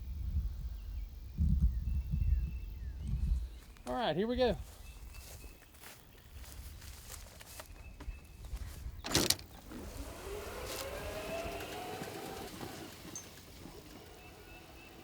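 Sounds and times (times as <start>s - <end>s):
golf cart motor accelerating: 9.0s - 15.0s.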